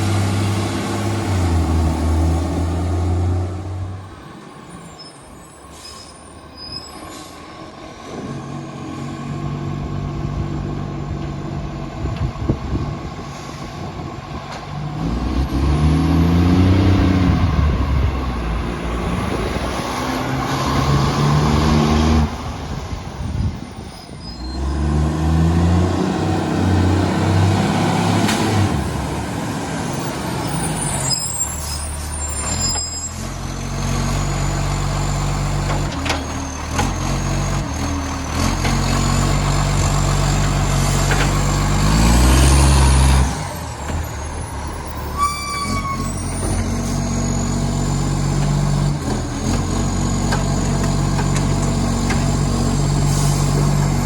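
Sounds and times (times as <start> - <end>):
garbage truck diesel engine revving: 0.0 - 4.1, 7.9 - 22.8, 24.6 - 54.0
brief squeal: 4.7 - 7.6, 23.7 - 24.7, 30.4 - 35.3, 44.2 - 48.3, 49.7 - 50.7
air brakes hissing: 4.8 - 8.2, 52.8 - 53.7.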